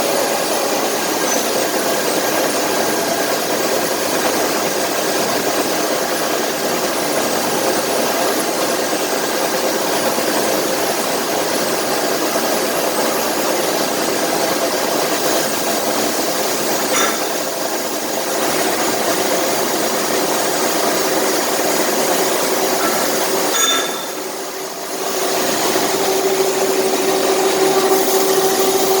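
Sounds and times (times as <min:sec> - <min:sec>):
milling cutter cutting steel: 0:16.6 - 0:17.7, 0:22.8 - 0:24.5.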